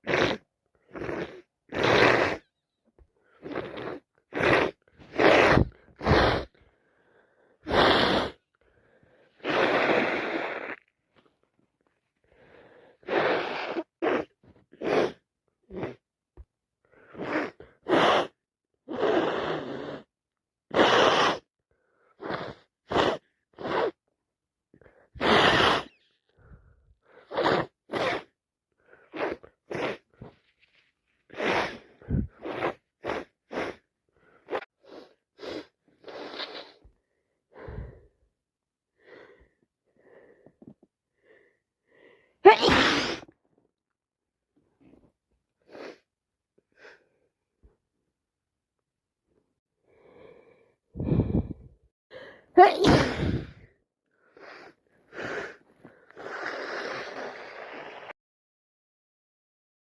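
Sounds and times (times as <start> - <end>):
short breaths: 28.1 - 38.2, 49.9 - 58.1
woman sneezing: 42.4 - 43.3, 52.5 - 53.6.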